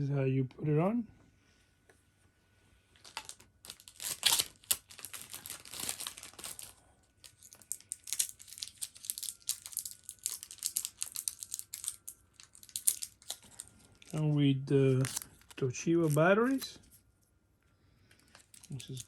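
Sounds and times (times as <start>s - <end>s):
plastic packaging crinkling: 3.0s - 17.0s, 18.1s - 19.0s.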